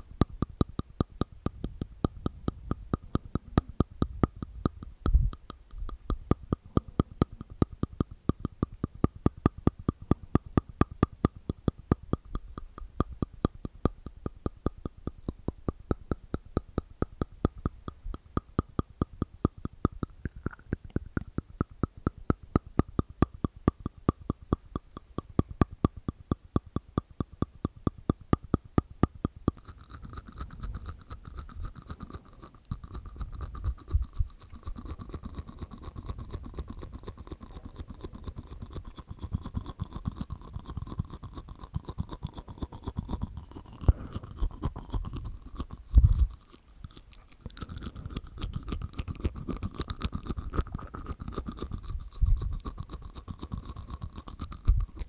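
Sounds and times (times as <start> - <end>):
wet mouth clicks: 0.0 - 55.0.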